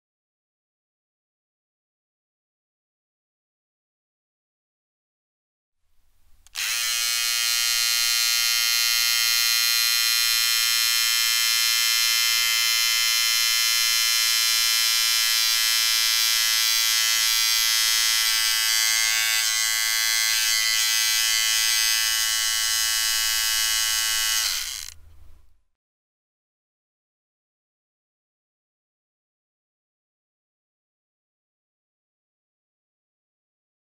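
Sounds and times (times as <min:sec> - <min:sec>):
electric beard trimmer buzzing: 0:06.5 - 0:25.0.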